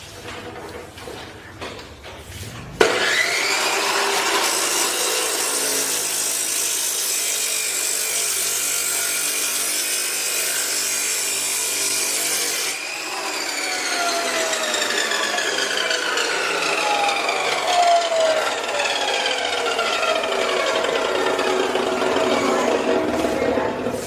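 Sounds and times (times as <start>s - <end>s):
cut-off saw motor whine: 2.8s - 4.2s, 12.7s - 23.5s
saw wheel grinding through steel: 3.0s - 24.0s.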